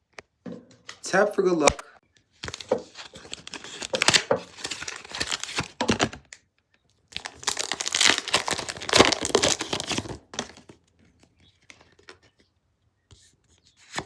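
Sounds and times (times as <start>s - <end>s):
foil wrapper tearing and crinkling: 2.4s - 6.2s, 7.1s - 10.5s.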